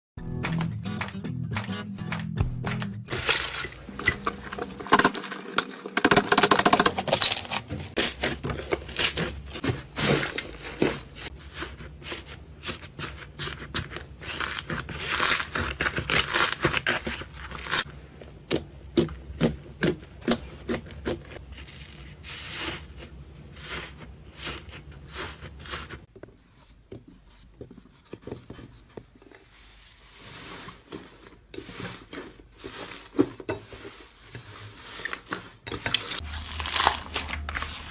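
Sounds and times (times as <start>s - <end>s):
hands squelching slime: 33.8s - 37.9s.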